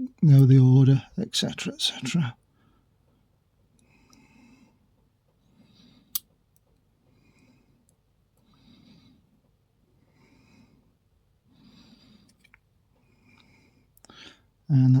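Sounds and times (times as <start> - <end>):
person breathing: 3.8 - 4.8, 5.4 - 6.2, 8.4 - 9.3, 10.0 - 12.4, 13.0 - 14.6.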